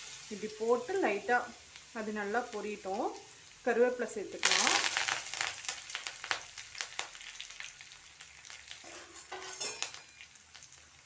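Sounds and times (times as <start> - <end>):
leaves and paste sizzling in hot oil: 0.0 - 11.0
sharp crackles in oil: 4.4 - 11.0.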